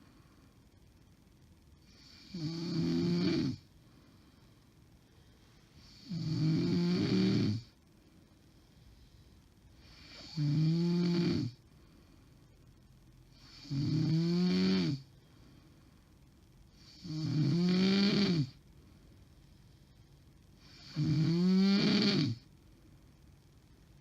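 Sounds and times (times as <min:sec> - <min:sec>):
quiet breathing: 0:00.0 - 0:14.0, 0:14.8 - 0:21.5
woman snoring heavily: 0:01.9 - 0:03.6, 0:05.8 - 0:07.8, 0:09.8 - 0:11.6, 0:13.4 - 0:15.1, 0:16.8 - 0:18.6, 0:20.6 - 0:22.4.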